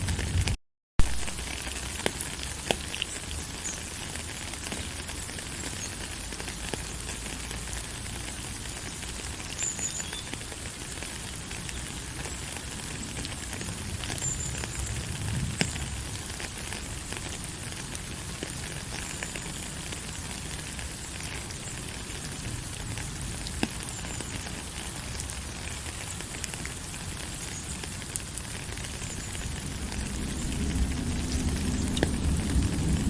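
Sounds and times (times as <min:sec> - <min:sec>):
low rumble: 0:00.0 - 0:00.6, 0:29.4 - 0:33.0
steady rain falling: 0:00.0 - 0:33.0.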